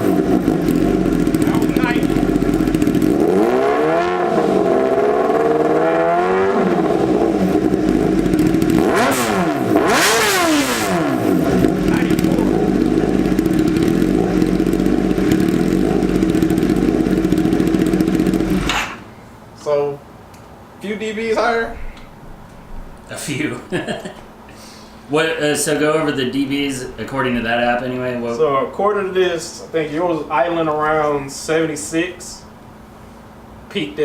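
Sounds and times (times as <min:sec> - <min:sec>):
motorcycle engine idling and revving: 0:00.0 - 0:19.0.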